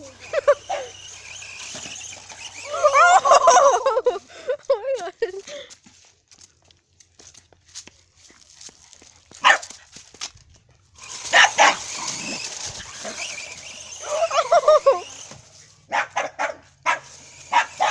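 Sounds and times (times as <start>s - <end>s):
dog barking: 9.4s - 9.7s, 11.3s - 11.9s, 15.9s - 17.9s
dog whining: 11.2s - 13.2s.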